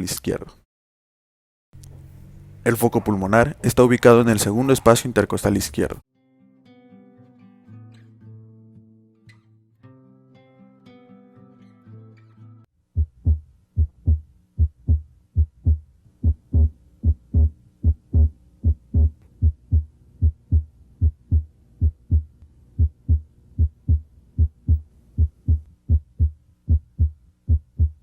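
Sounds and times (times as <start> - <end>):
heartbeat lub-dub thumps: 13.0 - 28.0.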